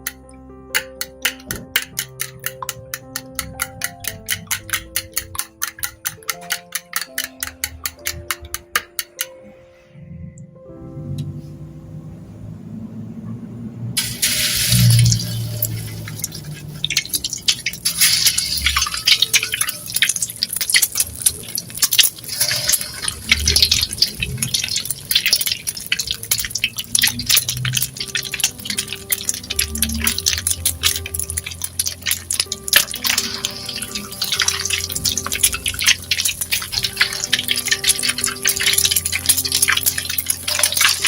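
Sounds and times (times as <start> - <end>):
soft background music: 0.0 - 41.0
food sizzling in frying oil: 14.0 - 41.0.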